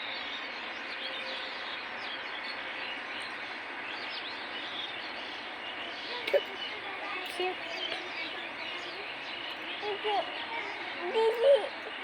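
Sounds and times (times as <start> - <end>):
steady outdoor hiss: 0.0 - 12.0
birds chirping: 0.2 - 12.0.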